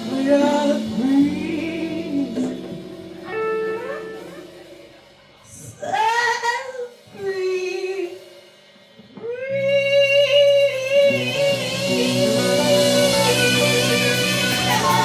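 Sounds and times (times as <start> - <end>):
person singing: 0.0 - 4.5, 9.2 - 15.0
band playing: 0.0 - 8.1, 9.2 - 15.0.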